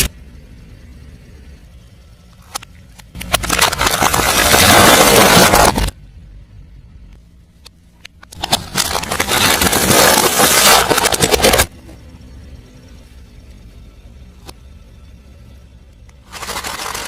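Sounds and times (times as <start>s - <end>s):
low engine hum: 0.0s - 4.2s, 4.8s - 9.8s, 11.3s - 17.0s
tyre crunching brittle objects: 3.2s - 5.9s, 8.4s - 11.7s, 16.3s - 17.0s.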